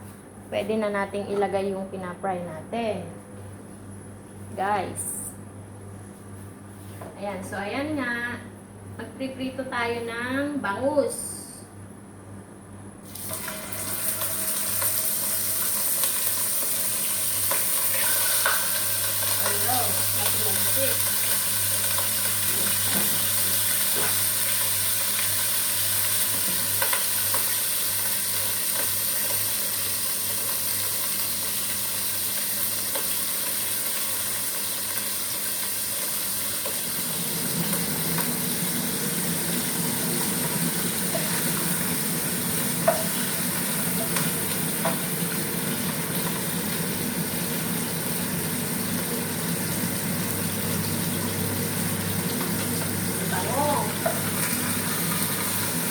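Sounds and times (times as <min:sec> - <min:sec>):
fish frying in oil: 0:13.2 - 0:55.9.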